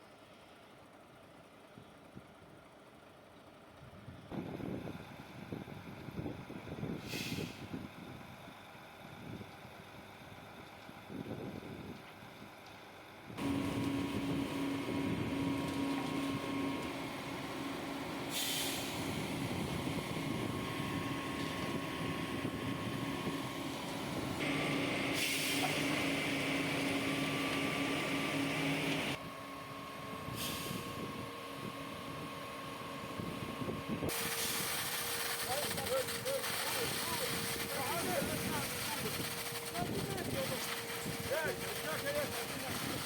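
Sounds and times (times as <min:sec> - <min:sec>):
heavy machinery engine running: 0:10.4 - 0:43.0
air hissing: 0:18.3 - 0:19.7, 0:24.4 - 0:25.9.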